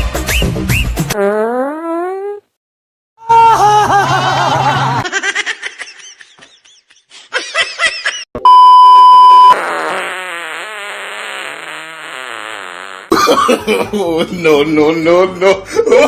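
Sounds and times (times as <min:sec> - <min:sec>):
wavering fart sound effect: 0:01.1 - 0:02.5, 0:09.5 - 0:13.1
loud steady beep: 0:08.4 - 0:09.6.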